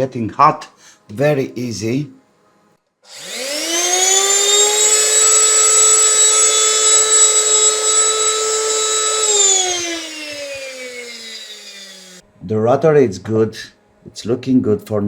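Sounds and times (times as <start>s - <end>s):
vacuum cleaner motor whining: 3.1s - 12.2s.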